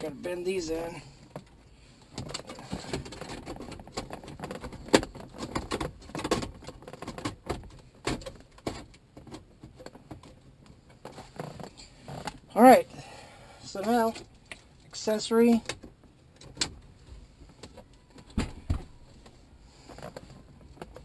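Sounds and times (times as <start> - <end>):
car stereo clicks and knocks: 1.3 - 11.1.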